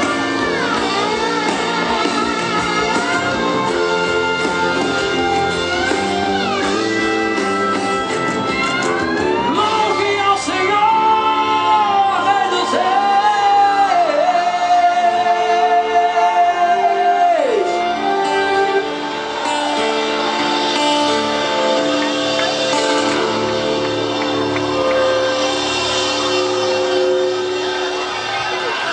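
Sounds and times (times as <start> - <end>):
guitar accompaniment: 0.0 - 28.9
sustained instrumental chords: 0.0 - 28.9
person singing gospel: 9.4 - 19.0.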